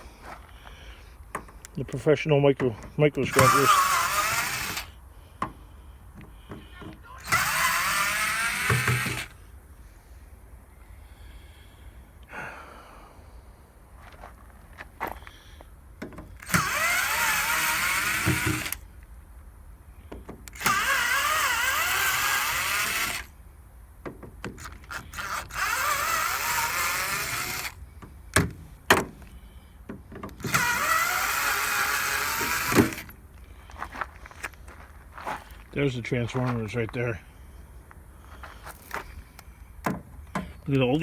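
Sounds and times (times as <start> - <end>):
power driver motor whine: 3.2 - 5.0, 6.4 - 9.4, 16.3 - 18.9, 20.4 - 23.4, 24.6 - 29.6, 30.2 - 33.2.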